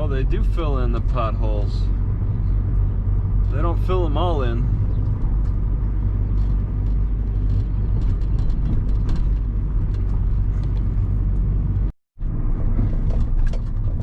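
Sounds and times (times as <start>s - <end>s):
road and engine rumble: 0.0s - 14.0s
small rattles and knocks: 4.9s - 11.1s.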